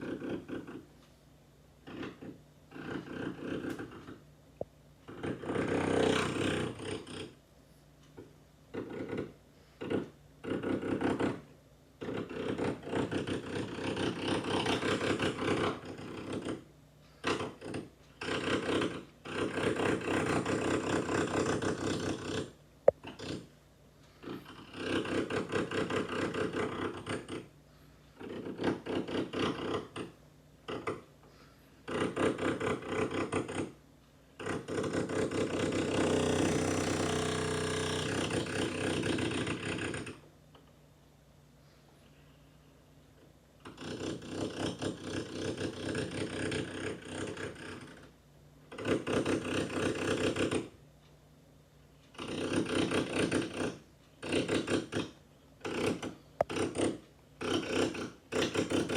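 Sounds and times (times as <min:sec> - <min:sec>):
electric drill running in bursts: 0:05.1 - 0:07.0, 0:34.7 - 0:40.0.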